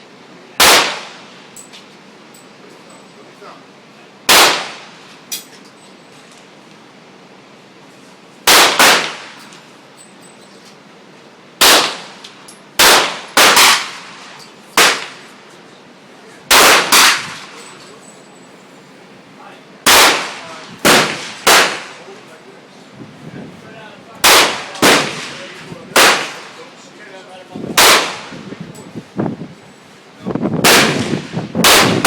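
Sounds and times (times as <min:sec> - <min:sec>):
pistol shots: 0:00.6 - 0:01.2, 0:04.3 - 0:04.9, 0:08.5 - 0:09.4, 0:11.6 - 0:12.2, 0:12.8 - 0:14.2, 0:14.8 - 0:15.2, 0:16.5 - 0:17.5, 0:19.8 - 0:22.0, 0:24.2 - 0:26.5, 0:27.8 - 0:28.4, 0:30.6 - 0:32.0.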